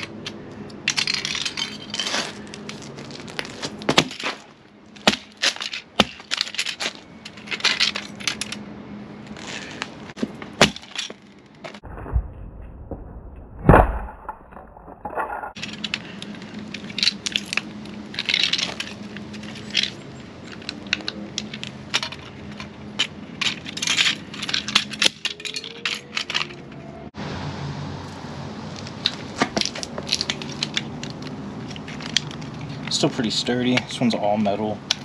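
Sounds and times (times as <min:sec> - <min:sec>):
metal model car being smashed: 0:10.6 - 0:11.2.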